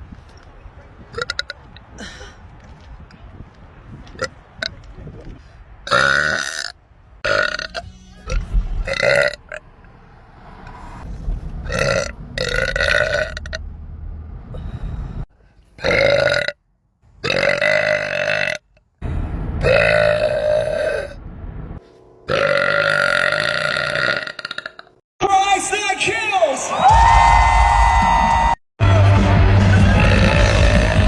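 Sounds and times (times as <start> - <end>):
woman burping loudly: 22.3 - 24.9, 30.0 - 31.0.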